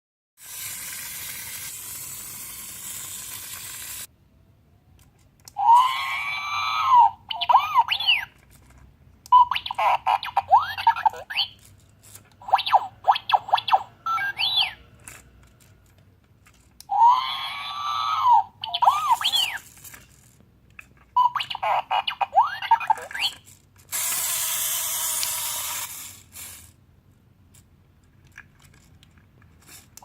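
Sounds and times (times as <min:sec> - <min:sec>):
toy robot beeps and whistles: 0:05.6 - 0:08.4, 0:09.3 - 0:11.6, 0:12.4 - 0:14.9, 0:16.9 - 0:19.8, 0:21.2 - 0:26.7.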